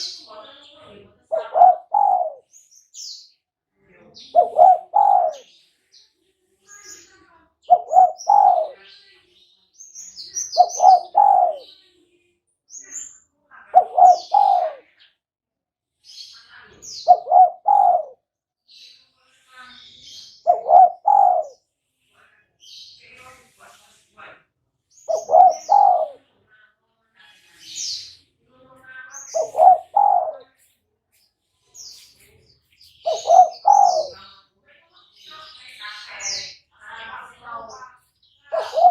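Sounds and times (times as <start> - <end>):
small birds chirping: 0.0 - 38.9
dove cooing: 1.3 - 2.5, 4.3 - 5.5, 7.7 - 8.8, 10.6 - 11.7, 13.8 - 14.9, 17.1 - 18.2, 20.5 - 21.6, 25.1 - 26.2, 29.4 - 30.5, 33.0 - 34.2, 38.5 - 38.9.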